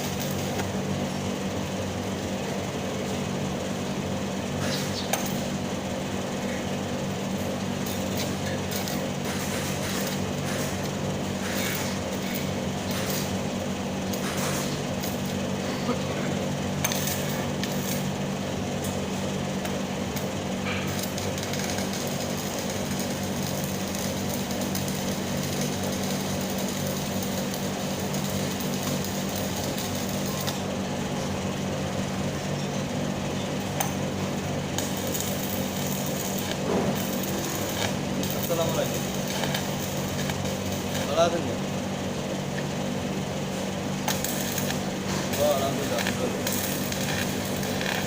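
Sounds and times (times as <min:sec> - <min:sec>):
sharp welding pops: 0:00.0 - 0:00.8, 0:04.6 - 0:05.5, 0:07.4 - 0:13.4, 0:14.0 - 0:15.4, 0:16.8 - 0:18.2, 0:19.6 - 0:30.7, 0:33.6 - 0:41.4, 0:43.5 - 0:48.0
low electrical hum: 0:00.0 - 0:48.0
welding arc crackling: 0:00.0 - 0:48.0.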